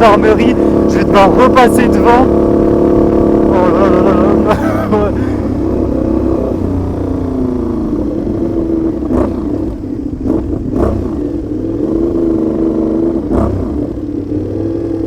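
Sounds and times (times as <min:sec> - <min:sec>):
sharp exhaust cracks: 0:00.0 - 0:14.0
motorcycle engine running: 0:00.0 - 0:15.0.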